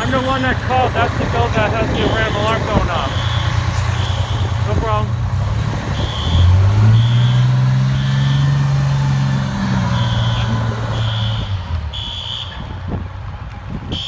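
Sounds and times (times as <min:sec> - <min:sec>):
truck engine running: 0:00.0 - 0:13.3
fire alarm horn beeps: 0:02.0 - 0:04.8, 0:05.9 - 0:08.7, 0:09.9 - 0:12.7.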